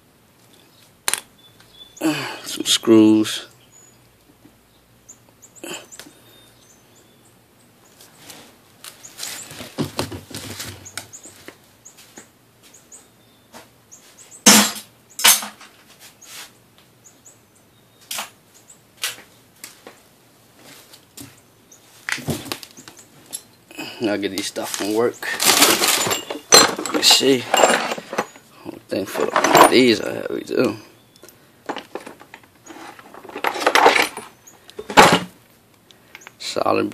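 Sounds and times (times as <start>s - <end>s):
scrap metal clicks and knocks: 24.8s - 28.5s, 29.1s - 30.0s, 31.7s - 35.3s
rattling metal clinks: 25.4s - 28.5s, 29.1s - 30.2s, 31.7s - 35.0s.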